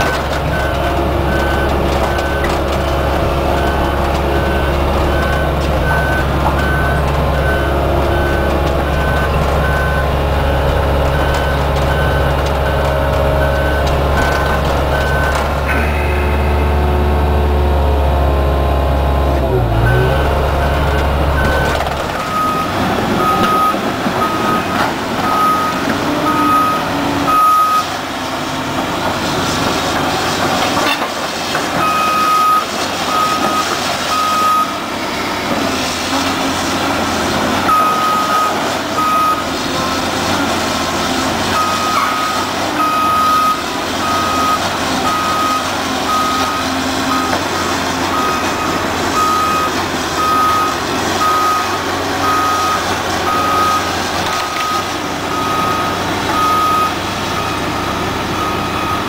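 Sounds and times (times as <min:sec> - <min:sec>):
heavy machinery running: 0:00.0 - 0:59.0
backup alarm beeping: 0:00.5 - 0:17.4, 0:19.9 - 0:27.9, 0:41.6 - 0:53.9, 0:54.5 - 0:59.0.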